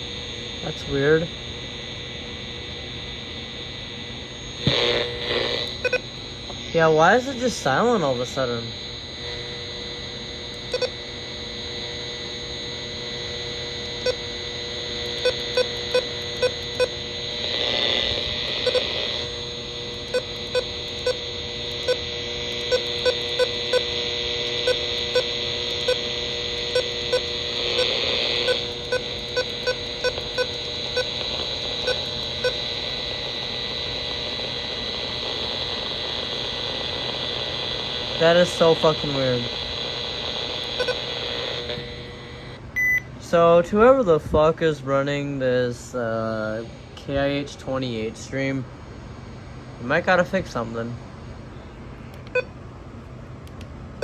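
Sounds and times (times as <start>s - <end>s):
radio static hiss: 0.0s - 42.6s, 43.2s - 51.0s
hum-like tones: 0.0s - 54.0s
sharp clicks: 52.1s - 52.4s.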